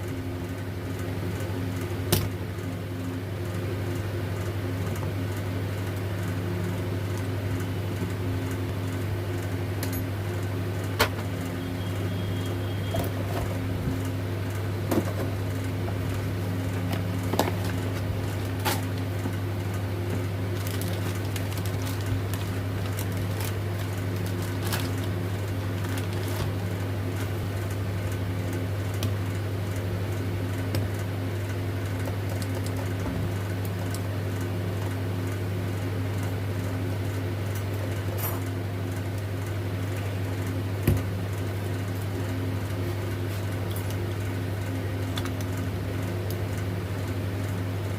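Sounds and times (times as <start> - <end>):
steady low hum: 0.0 - 47.9.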